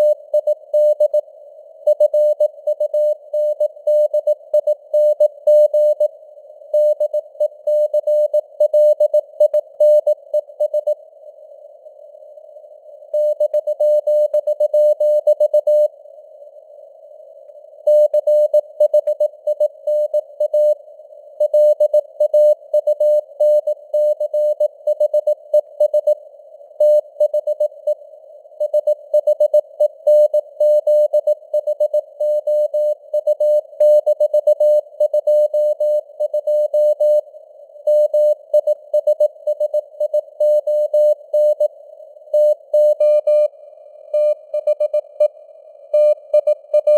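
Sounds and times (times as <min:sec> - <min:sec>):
morse code tone: 0:46.0 - 0:46.9.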